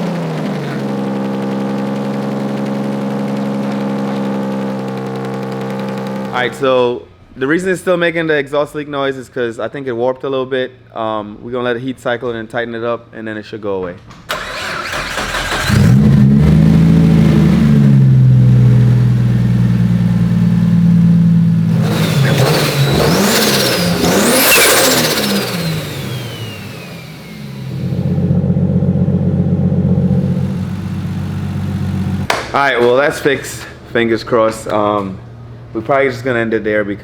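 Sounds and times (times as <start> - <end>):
car engine revving and idling: 0.0 - 6.7, 14.3 - 32.3
high whistle rising with revs: 21.8 - 28.3.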